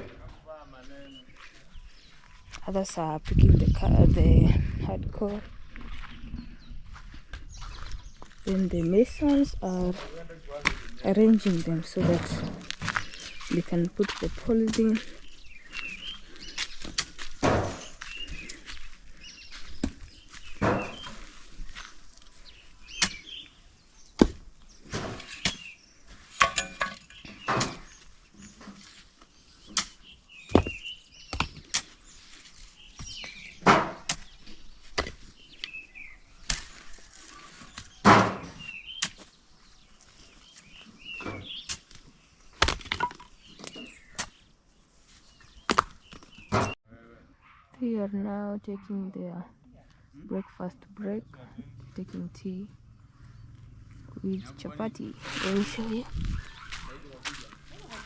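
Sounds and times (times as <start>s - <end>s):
rocks knocking on rocks: 30.5s - 30.8s.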